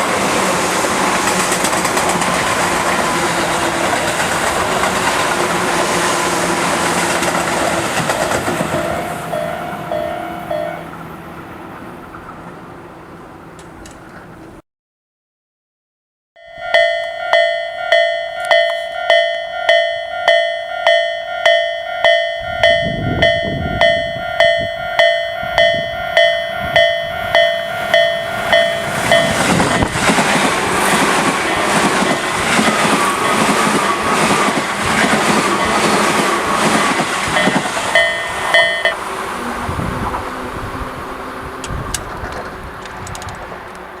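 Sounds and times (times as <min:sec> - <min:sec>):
train passing over crossing: 0:00.0 - 0:14.6, 0:16.4 - 0:44.0
level crossing bells ringing: 0:08.1 - 0:10.9, 0:16.4 - 0:30.0, 0:37.4 - 0:39.0.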